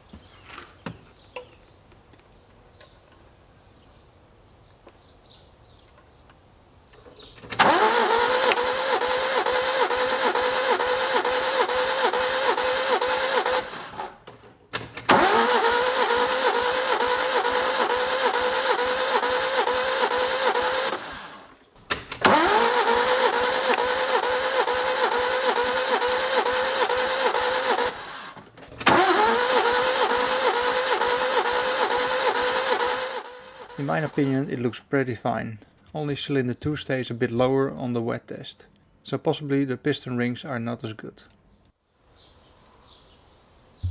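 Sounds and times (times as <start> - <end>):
starter motor cranking engine: 7.4 - 34.5.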